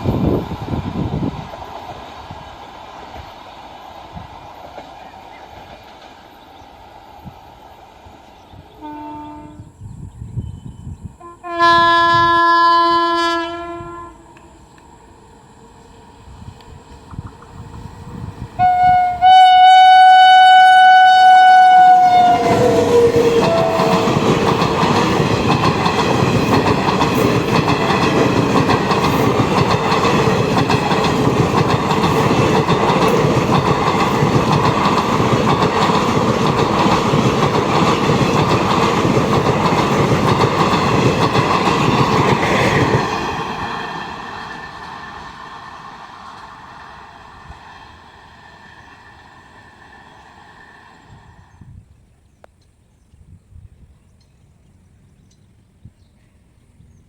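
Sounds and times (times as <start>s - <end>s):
train wheels rushing on rails: 0.0s - 9.0s, 11.7s - 51.8s
train horn: 8.7s - 9.8s, 11.2s - 14.6s, 18.6s - 24.4s.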